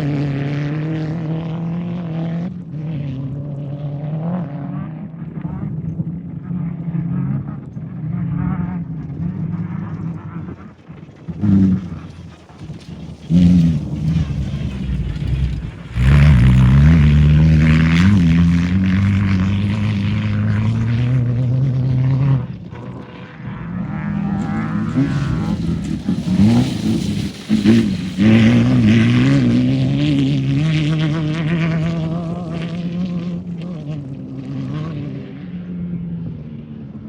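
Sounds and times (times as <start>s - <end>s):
race vehicle engines revving: 0.0s - 37.0s
gear shifts: 7.7s - 32.6s.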